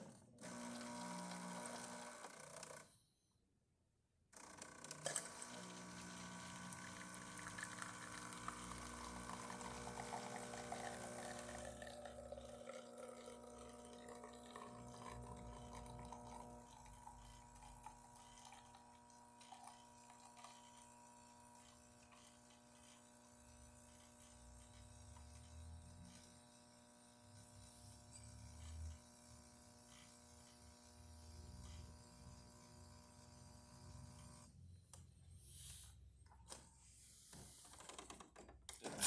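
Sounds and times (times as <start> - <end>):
espresso machine pump humming: 0.4 - 2.4, 5.0 - 34.5
coffee pouring into cup: 5.0 - 23.1.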